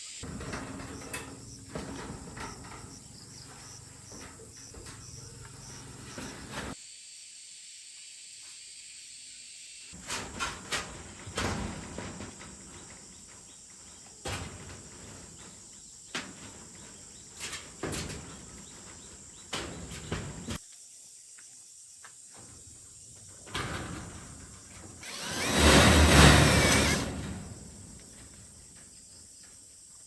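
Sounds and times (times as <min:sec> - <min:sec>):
faint insect drone: 0:00.0 - 0:30.0
sharp knocks and clatter: 0:00.2 - 0:06.8, 0:10.0 - 0:20.6, 0:23.2 - 0:28.9.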